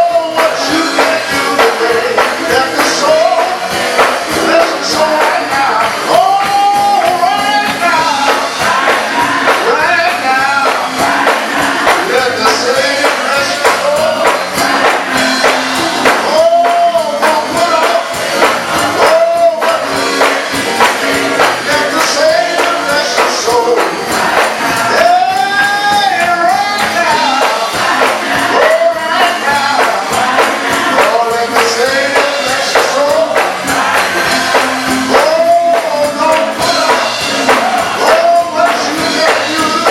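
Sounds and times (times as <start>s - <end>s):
gospel choir singing with music: 0.0s - 39.9s.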